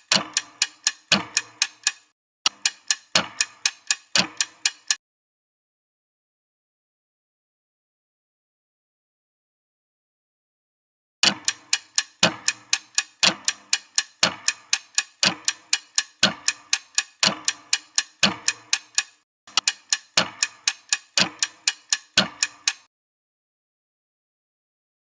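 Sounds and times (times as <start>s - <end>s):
clock-like ticking: 0.0s - 5.0s, 11.2s - 22.9s.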